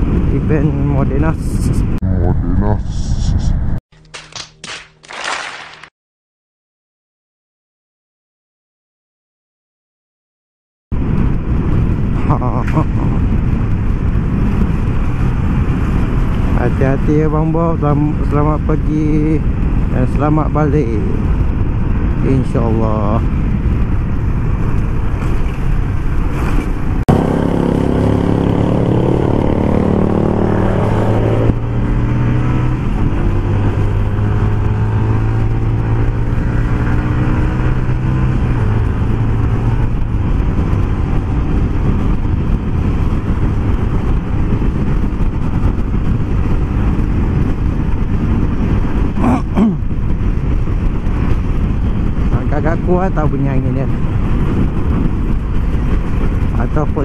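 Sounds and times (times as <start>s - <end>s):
wind and road noise: 0.0s - 5.9s, 10.9s - 57.0s
motorcycle engine accelerating: 23.3s - 52.4s.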